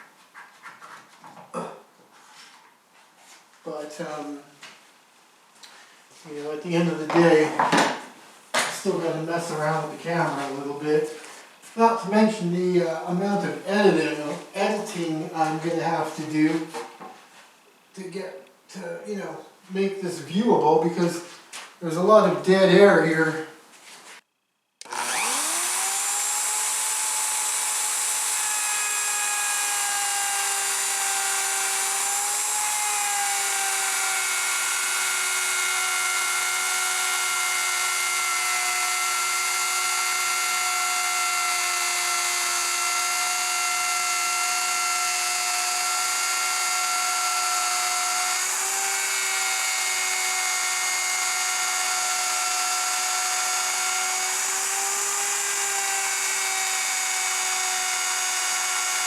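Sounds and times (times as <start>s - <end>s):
power tool motor whining: 24.8s - 59.0s.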